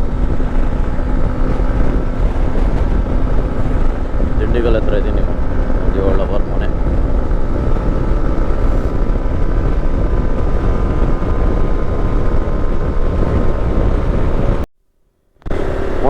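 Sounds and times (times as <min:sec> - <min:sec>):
motorcycle engine humming: 0:00.0 - 0:14.7, 0:15.4 - 0:16.0
wind buffeting microphone: 0:00.0 - 0:14.7.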